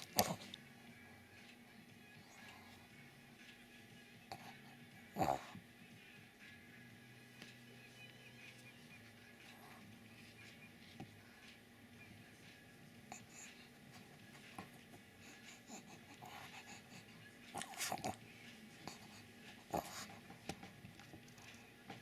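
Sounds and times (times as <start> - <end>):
dog snorts: 0.0 - 0.6, 4.3 - 5.6, 15.2 - 18.2, 18.9 - 20.4
dog breathing wheezily: 15.2 - 18.2.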